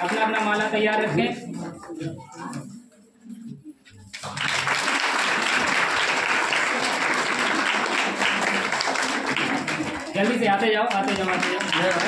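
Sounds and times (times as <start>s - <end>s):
audience applauding: 4.2s - 12.0s.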